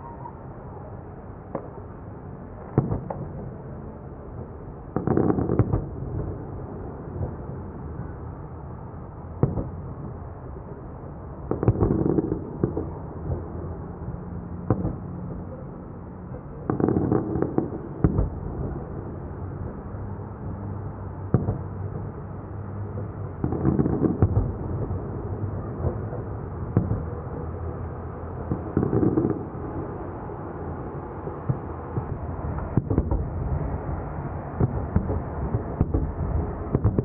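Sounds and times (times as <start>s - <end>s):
fireworks bursting with bangs: 2.7s - 3.3s, 5.0s - 6.4s, 11.4s - 13.4s, 16.6s - 18.9s, 21.3s - 22.1s, 22.9s - 27.6s, 28.4s - 30.2s, 31.4s - 37.0s.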